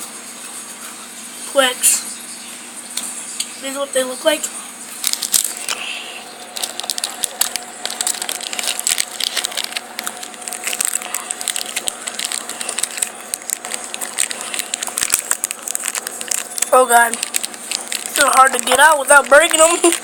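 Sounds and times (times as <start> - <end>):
candy wrapper crinkling: 5.0 - 20.0.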